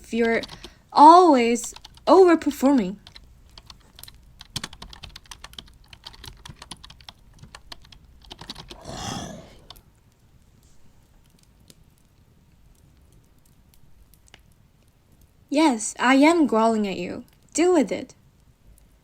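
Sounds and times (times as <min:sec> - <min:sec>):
short low growl: 0:08.8 - 0:09.7.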